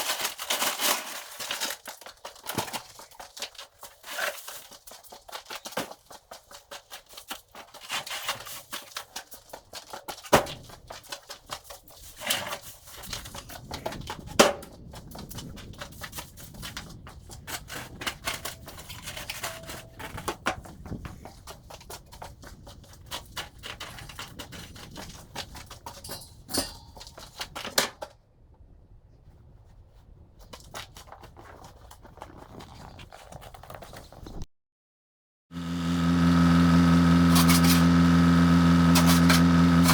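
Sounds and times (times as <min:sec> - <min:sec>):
objects clicking and rattling: 0:00.0 - 0:28.1.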